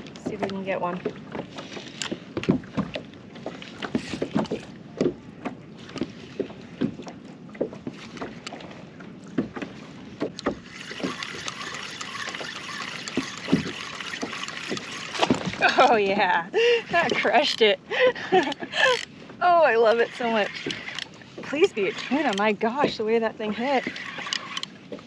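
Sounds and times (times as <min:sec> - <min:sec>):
gear knocking on kayak: 0:00.0 - 0:16.3.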